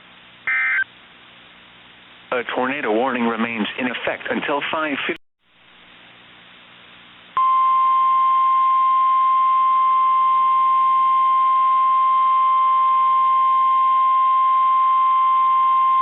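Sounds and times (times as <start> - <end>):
faint radio hiss: 0.0 - 7.4
steady high-pitched alarm tone: 0.5 - 0.9.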